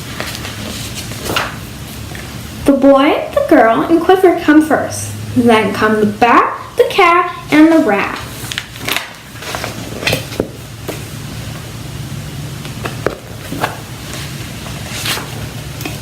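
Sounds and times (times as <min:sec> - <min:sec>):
book pages rustling and turning: 0:00.0 - 0:02.3, 0:07.7 - 0:11.7, 0:12.6 - 0:16.0.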